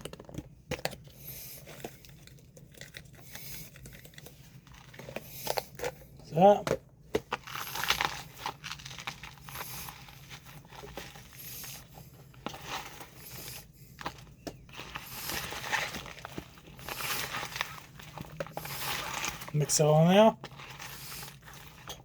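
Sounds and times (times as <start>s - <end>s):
hands squishing raw meat: 0.0s - 22.0s.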